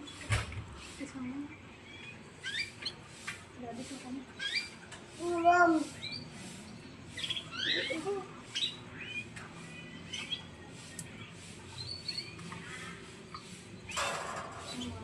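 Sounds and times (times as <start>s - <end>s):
canary chirping: 1.8s - 3.1s, 4.4s - 12.8s.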